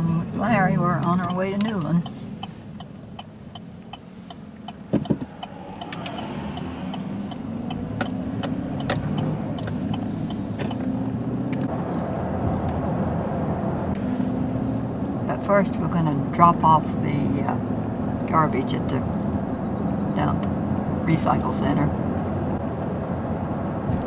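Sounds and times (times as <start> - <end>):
car engine and road noise: 0.0 - 24.0
light regular ticking: 0.9 - 10.9.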